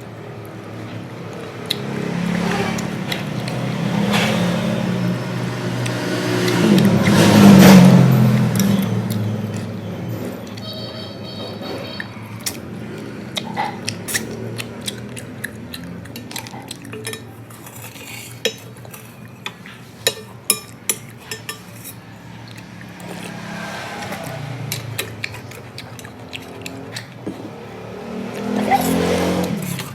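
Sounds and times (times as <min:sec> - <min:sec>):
utensils clinking against a bowl: 0:06.4 - 0:23.3.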